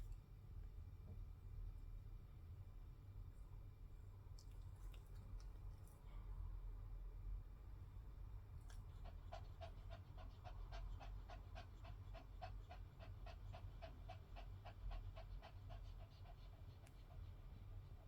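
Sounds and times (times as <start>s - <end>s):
dog panting quickly: 8.7s - 18.0s.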